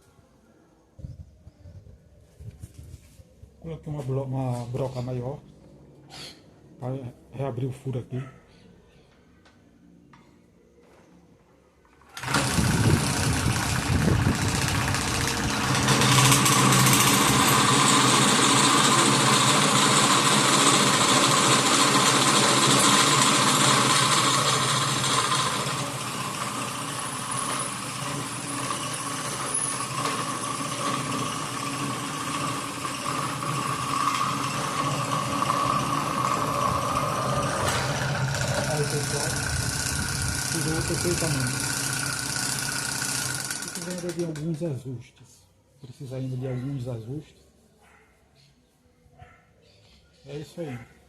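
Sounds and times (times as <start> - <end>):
drill press motor running: 12.1 - 44.4
drill bit cutting metal: 12.2 - 44.3.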